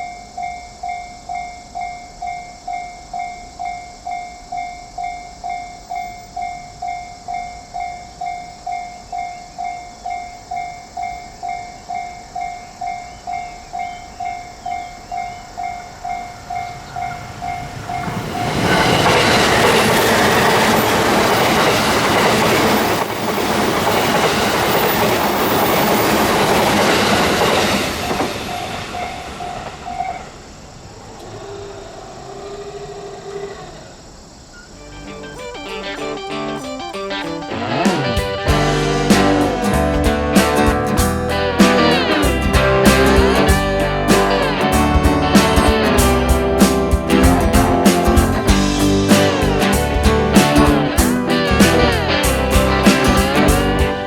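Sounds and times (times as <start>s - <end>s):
level-crossing alarm bell ringing: 0.0s - 30.2s, 34.7s - 39.1s
electric train passing: 0.0s - 31.2s, 34.0s - 54.0s.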